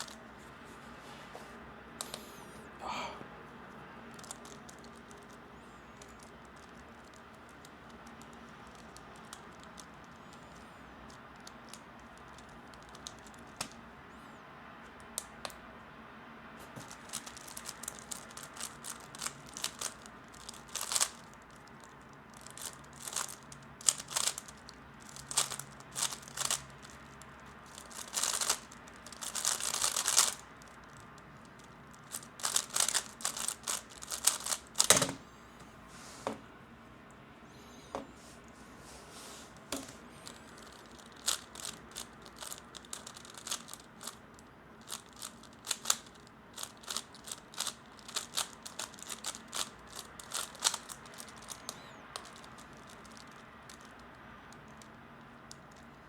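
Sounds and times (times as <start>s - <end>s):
puzzle cube clicking turns: 4.1s - 13.8s, 16.8s - 35.1s, 39.8s - 56.0s.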